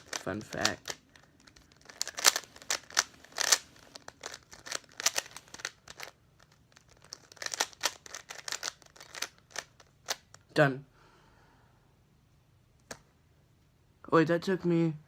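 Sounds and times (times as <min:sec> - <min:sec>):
rubik's cube clicking: 0:00.0 - 0:10.4.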